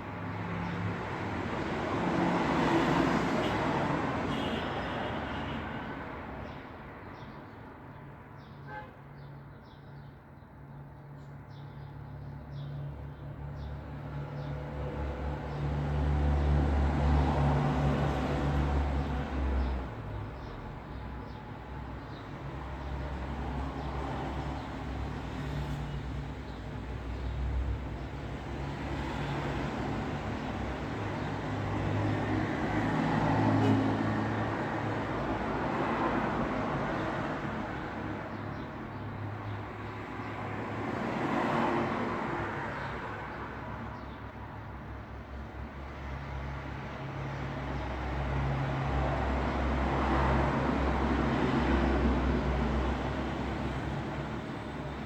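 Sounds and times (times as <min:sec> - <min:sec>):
vehicles passing: 0:13.1 - 0:55.0.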